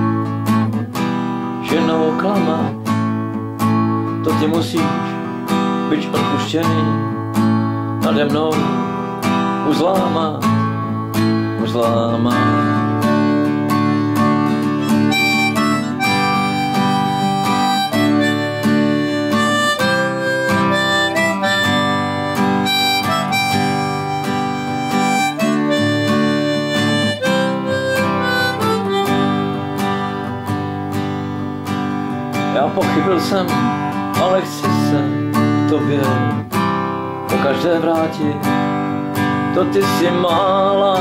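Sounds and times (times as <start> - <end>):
strummed acoustic guitar: 0.0 - 41.0
harmonica melody: 12.3 - 37.6.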